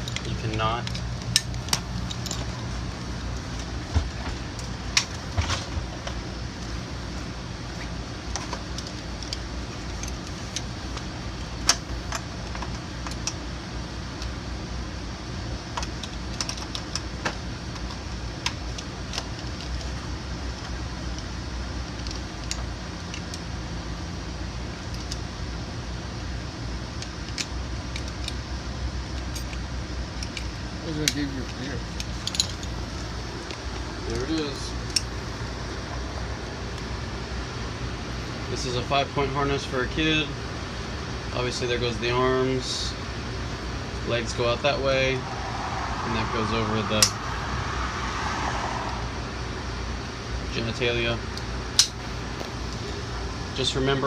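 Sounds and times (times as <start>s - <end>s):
metal buckles clinking: 0.0s - 13.5s, 27.0s - 44.5s, 45.1s - 47.5s, 50.7s - 53.7s
steady low hum: 0.0s - 54.0s.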